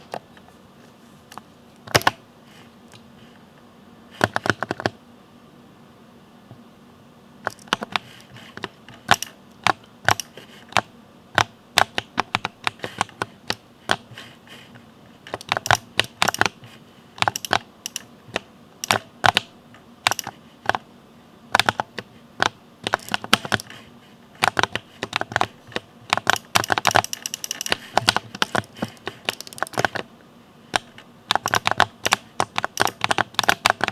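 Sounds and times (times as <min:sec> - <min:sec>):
typing on mechanical keyboard: 0:01.9 - 0:02.2, 0:04.2 - 0:05.0, 0:07.5 - 0:14.1, 0:15.3 - 0:16.6, 0:17.2 - 0:19.5, 0:20.1 - 0:20.8, 0:21.6 - 0:23.8, 0:24.4 - 0:30.1, 0:30.8 - 0:33.9.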